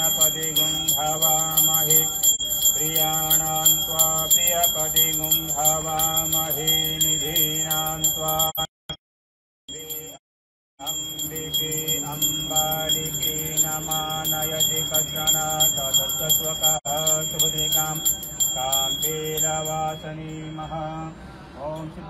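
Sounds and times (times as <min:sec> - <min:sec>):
men chanting: 0:00.0 - 0:08.6, 0:10.9 - 0:22.0
bell ringing: 0:00.0 - 0:08.7, 0:09.7 - 0:10.2, 0:10.8 - 0:20.9.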